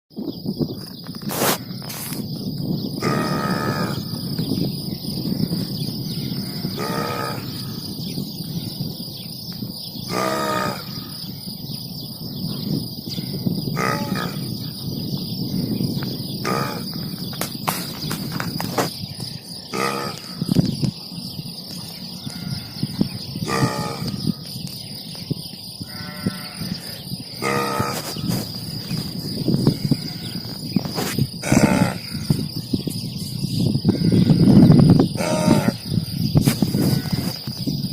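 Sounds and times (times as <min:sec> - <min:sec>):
man burping loudly: 0:16.4 - 0:16.9, 0:31.4 - 0:32.1.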